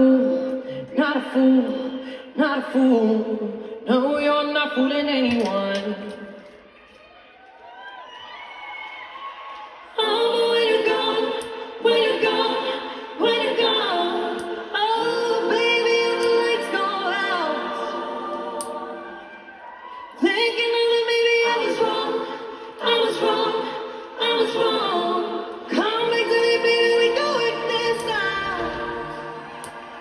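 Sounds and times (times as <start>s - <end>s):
layered voices singing: 9.9s - 30.0s.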